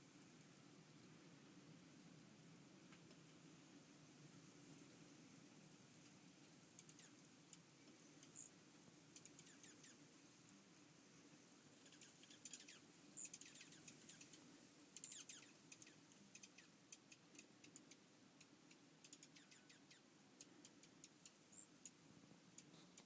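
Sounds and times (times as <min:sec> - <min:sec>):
small birds chirping: 0:06.1 - 0:23.0.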